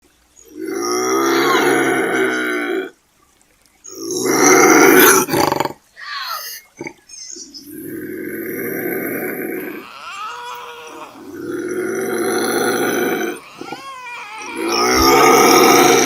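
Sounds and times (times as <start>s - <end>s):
bobcat yowling: 7.9s - 16.0s.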